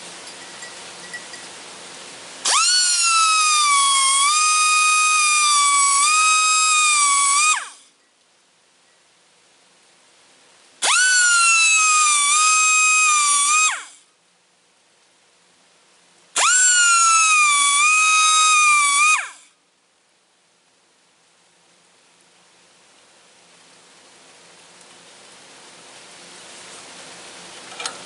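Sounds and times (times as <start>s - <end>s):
small power tool whining: 2.4s - 7.8s, 10.8s - 14.0s, 16.4s - 19.4s.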